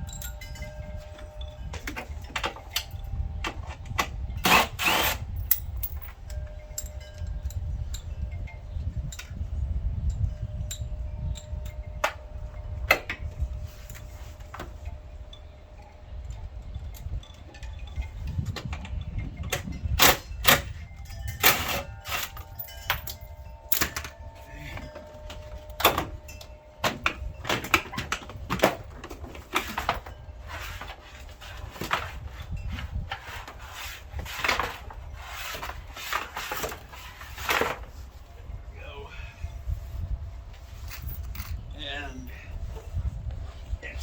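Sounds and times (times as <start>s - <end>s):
metal hand tools clinking: 4.4s - 8.1s, 19.6s - 28.9s.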